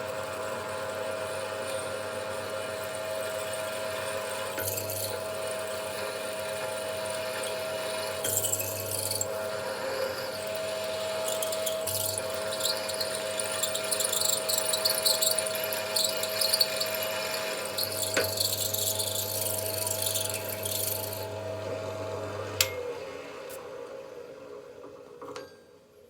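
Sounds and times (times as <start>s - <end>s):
power drill drilling metal: 3.3s - 21.3s
sharp click: 22.6s - 22.8s.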